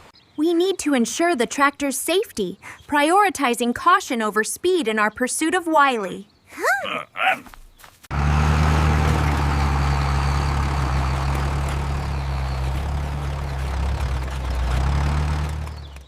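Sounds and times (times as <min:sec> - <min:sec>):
tractor engine droning: 0:08.1 - 0:16.0.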